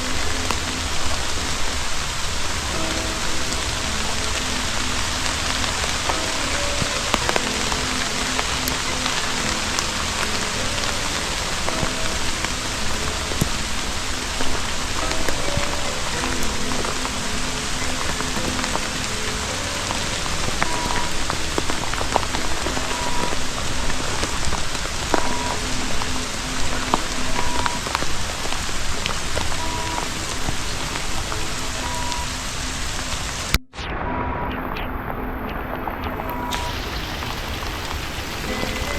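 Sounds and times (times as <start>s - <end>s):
raindrop taps: 0.0s - 33.6s, 34.8s - 38.9s
steady rain hiss: 0.0s - 38.9s.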